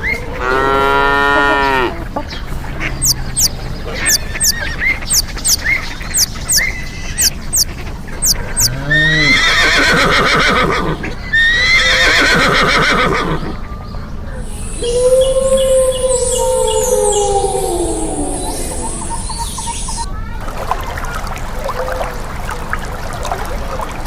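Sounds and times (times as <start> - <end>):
horse whinnying: 8.6 - 13.6
short high chirps: 14.4 - 17.0
long falling tone: 14.4 - 20.1.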